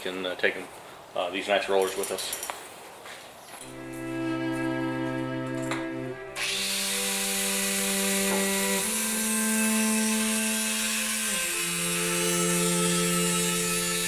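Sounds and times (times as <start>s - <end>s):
angle grinder grinding metal: 3.6s - 14.0s
sustained string music: 3.6s - 14.0s.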